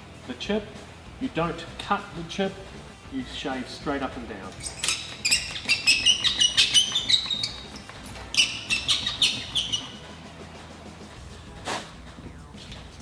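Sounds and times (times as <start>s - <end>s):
razor blade scraping glass: 4.6s - 10.1s.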